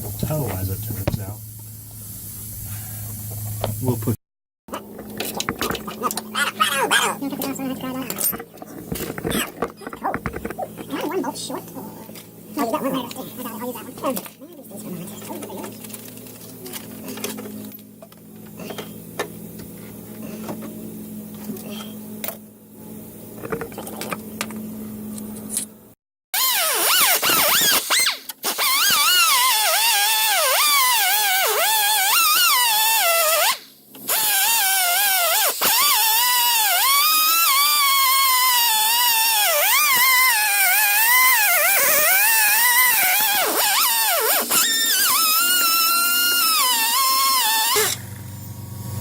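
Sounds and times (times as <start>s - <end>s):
low steady hum: 47.8s - 49.0s.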